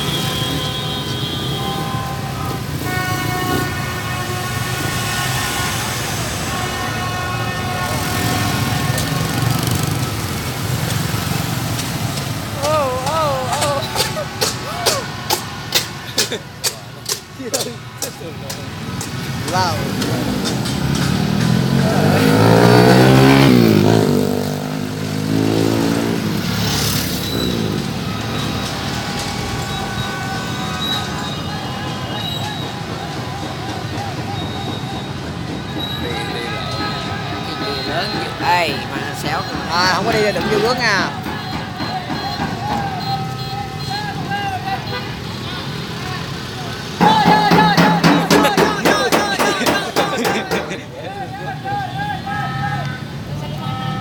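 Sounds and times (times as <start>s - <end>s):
motorbike engines droning: 0.0s - 54.0s
motorbikes revving past: 8.4s - 12.7s, 19.8s - 28.7s
held high tones: 47.0s - 50.9s.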